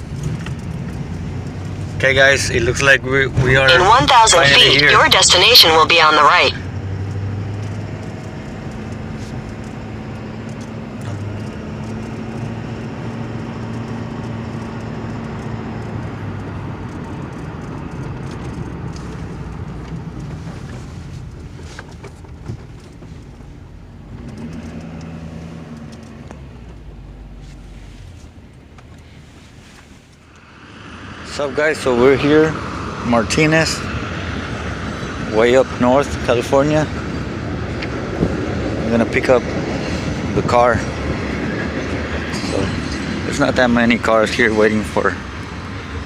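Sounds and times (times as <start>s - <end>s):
truck engine and road noise: 0.0s - 46.0s.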